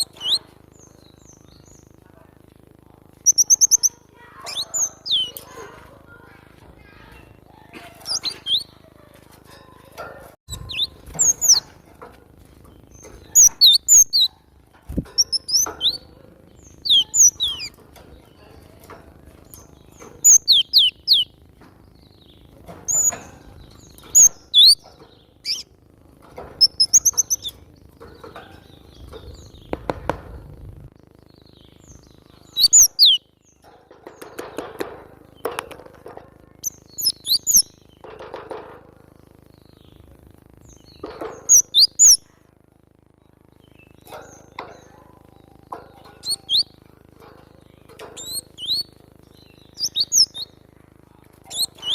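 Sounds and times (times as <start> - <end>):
bird singing high chirps: 0.0 - 2.0, 3.2 - 5.6, 8.0 - 8.8, 10.5 - 11.7, 12.9 - 14.4, 15.0 - 17.8, 19.5 - 25.8, 26.6 - 29.8, 31.2 - 33.6, 36.6 - 38.1, 40.6 - 42.3, 43.6 - 46.8, 47.8 - 50.6, 51.4 - 51.9.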